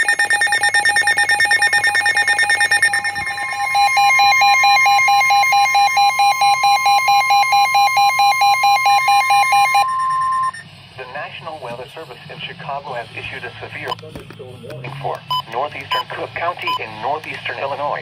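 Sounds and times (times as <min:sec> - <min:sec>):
rapid electronic alarm beep: 0:00.0 - 0:10.7, 0:15.3 - 0:17.0
slower pulsing beep: 0:00.0 - 0:10.7
steady warning alarm tone: 0:00.0 - 0:10.8.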